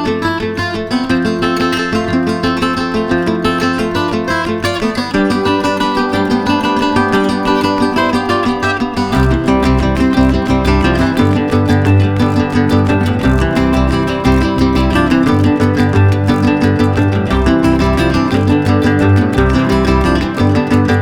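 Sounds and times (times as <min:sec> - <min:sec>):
acoustic guitar tune: 0:00.0 - 0:21.0
bass part: 0:09.2 - 0:21.0.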